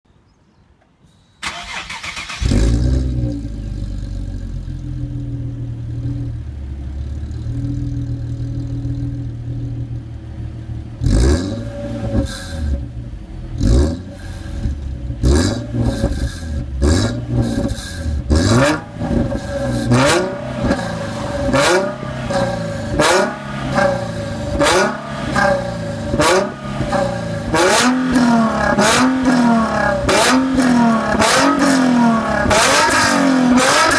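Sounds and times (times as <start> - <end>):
car engine idling: 1.4 - 11.1, 11.7 - 33.6
car engine starting: 1.4 - 33.9
crackly engine revving blips: 15.2 - 33.9.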